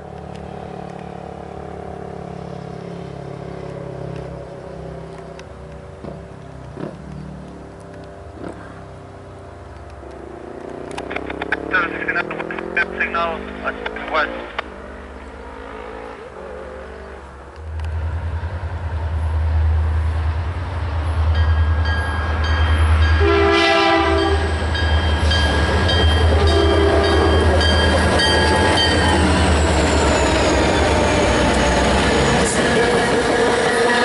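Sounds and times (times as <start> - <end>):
train rolling past: 0.0 - 7.8, 17.6 - 34.0
diesel locomotive engines rumbling: 0.0 - 15.5, 16.3 - 34.0
locomotive horn: 23.1 - 24.6, 26.1 - 27.6.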